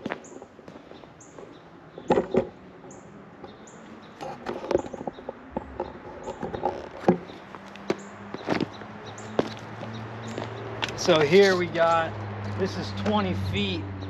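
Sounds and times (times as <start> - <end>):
footsteps on loose dirt: 0.0 - 2.1, 4.6 - 13.3.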